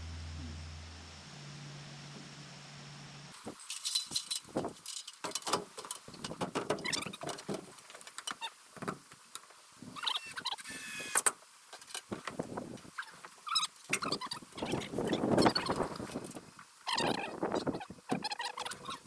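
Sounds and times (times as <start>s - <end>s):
clicks and knocks on glass door: 5.2s - 9.2s.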